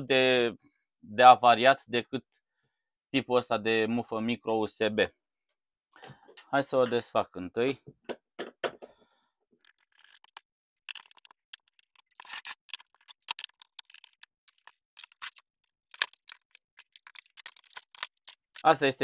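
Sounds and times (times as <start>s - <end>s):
plastic casing clicks and scrapes: 9.6s - 18.7s.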